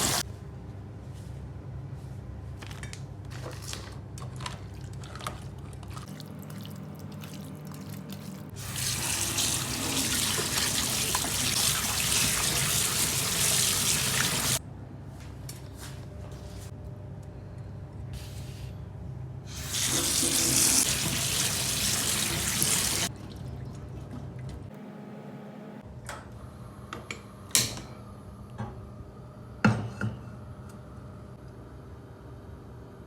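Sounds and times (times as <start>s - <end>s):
tap water running into sink: 0.0s - 0.2s, 8.6s - 14.6s, 19.6s - 23.8s
water drips and splashes: 5.9s - 14.6s, 19.7s - 24.6s.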